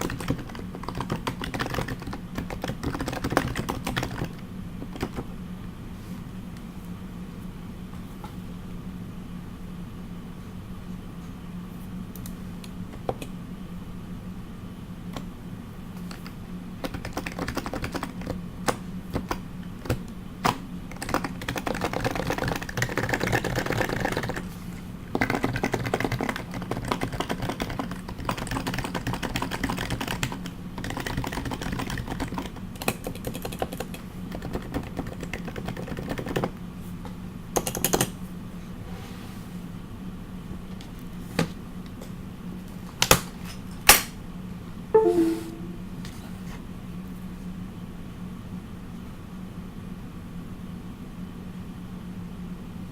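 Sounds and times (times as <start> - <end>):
keyboard typing: 0.0 - 5.2, 16.8 - 18.4, 21.0 - 24.4, 25.2 - 36.5, 45.0 - 45.8.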